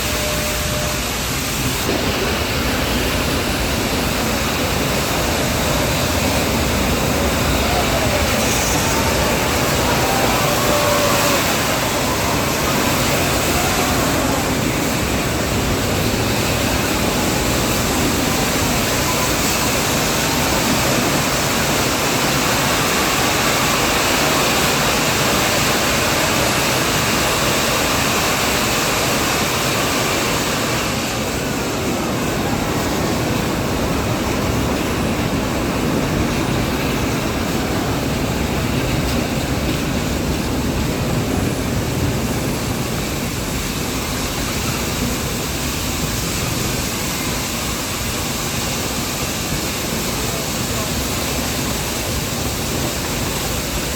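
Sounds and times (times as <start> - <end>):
train carriage rushing noise: 0.0 - 53.9.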